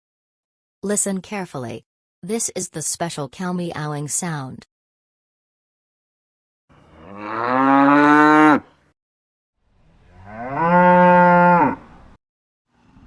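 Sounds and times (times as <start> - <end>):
cow mooing: 6.8 - 8.7, 10.2 - 11.8.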